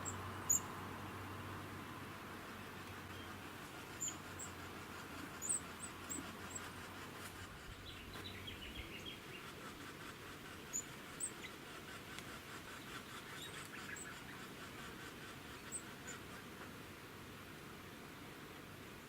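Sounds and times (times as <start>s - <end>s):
birds chirping and twittering: 0.0s - 1.2s, 2.5s - 16.5s.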